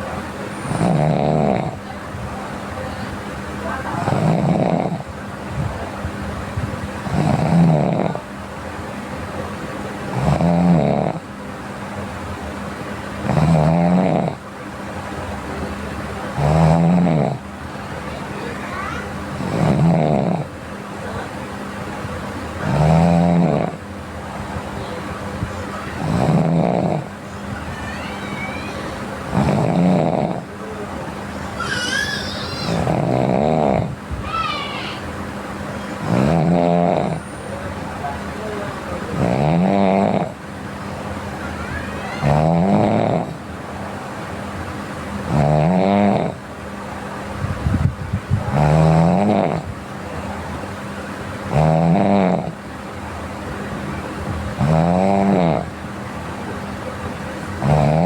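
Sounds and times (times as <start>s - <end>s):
person snoring: 29.3s - 30.4s.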